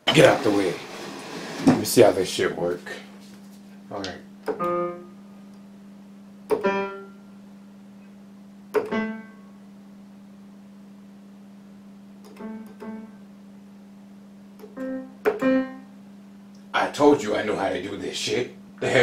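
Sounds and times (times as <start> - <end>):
steady low hum: 0.0 - 19.0
piano keyboard notes: 4.5 - 5.2, 6.5 - 7.2, 8.8 - 9.6, 12.4 - 13.1, 14.7 - 15.9.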